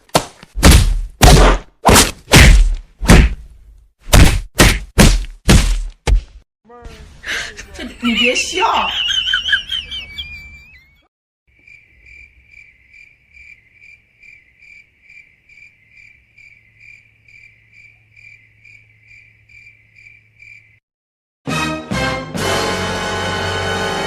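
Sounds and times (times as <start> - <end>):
crickets chirping: 11.5 - 20.8.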